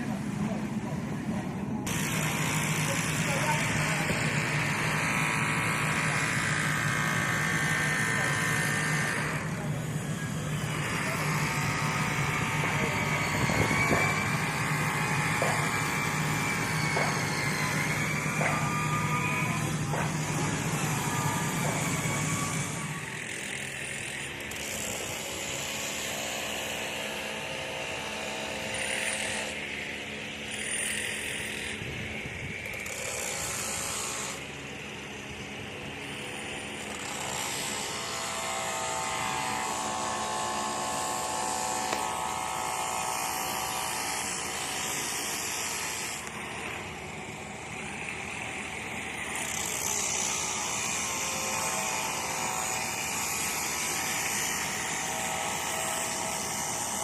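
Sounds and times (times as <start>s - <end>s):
machinery motor hum: 0.0s - 23.3s
power tools whirring: 0.0s - 57.0s
sharp knocks: 15.3s - 15.8s.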